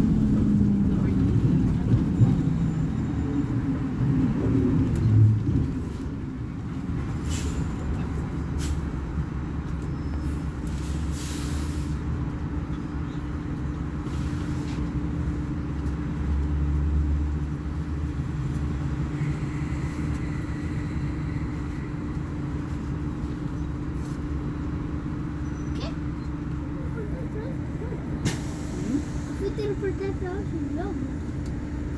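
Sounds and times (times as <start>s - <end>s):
diesel bus engine droning: 0.0s - 31.9s
brief hisses: 28.2s - 29.4s.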